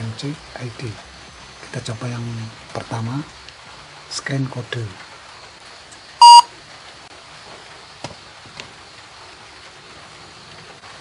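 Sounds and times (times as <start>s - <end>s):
loud electronic beep: 6.2s - 6.5s.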